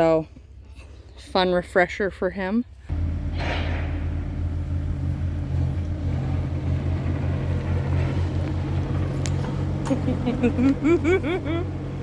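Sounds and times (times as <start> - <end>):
excavator diesel engine running: 2.9 - 12.0.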